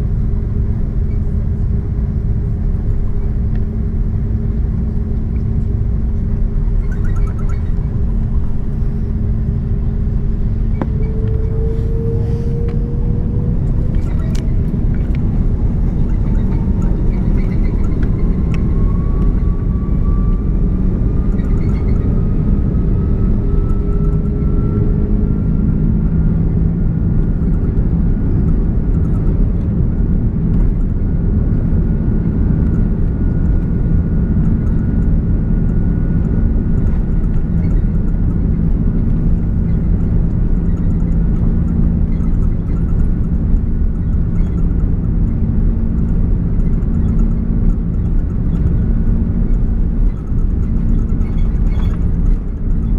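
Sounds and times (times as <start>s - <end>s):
jet engines spooling up: 6.8s - 24.8s.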